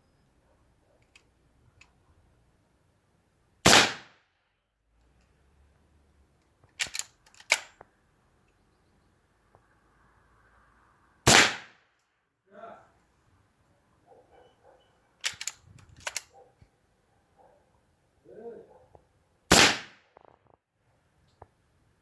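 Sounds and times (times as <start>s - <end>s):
light clicks: 1.0s - 2.0s, 15.2s - 16.7s
air rifle firing: 3.7s - 4.1s, 11.3s - 11.7s, 19.5s - 20.0s
sharp cracks and clacks: 15.2s - 16.3s.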